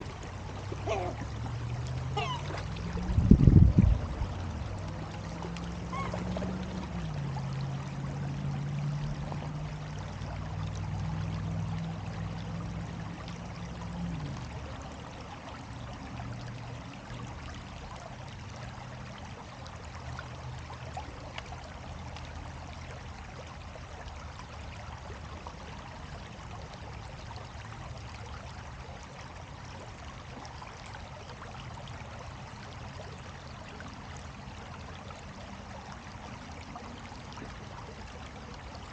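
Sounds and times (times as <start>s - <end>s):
low motor hum: 0.0s - 17.6s
water rushing: 0.0s - 38.9s.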